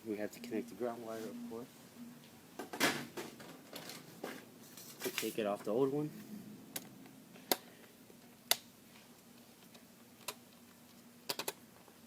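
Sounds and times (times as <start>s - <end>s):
faint steady hum: 0.0s - 12.0s
clicks and taps of small parts: 9.6s - 11.6s.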